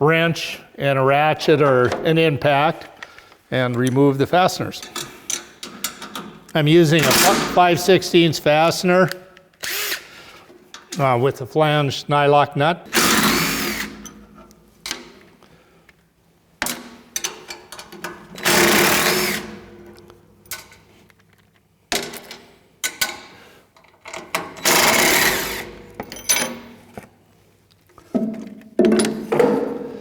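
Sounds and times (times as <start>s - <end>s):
impact driver spinning nuts: 9.6s - 10.1s, 12.9s - 14.0s, 18.4s - 19.6s, 24.6s - 26.1s.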